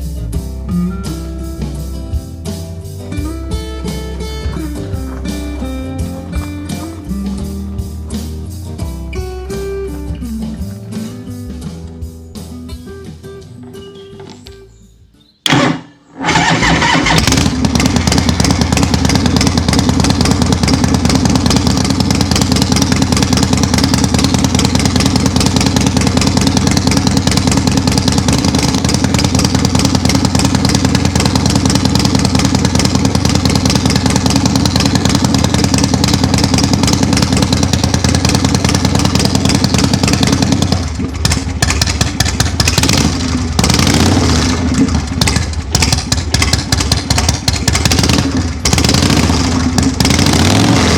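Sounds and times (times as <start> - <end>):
motorcycle engine running loud: 15.5 - 50.9.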